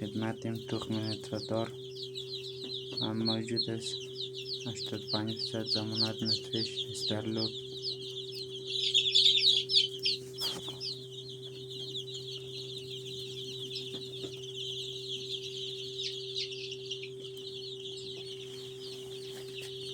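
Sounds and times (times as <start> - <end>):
chicks peeping: 0.0 - 19.9
steady low hum: 0.0 - 19.9.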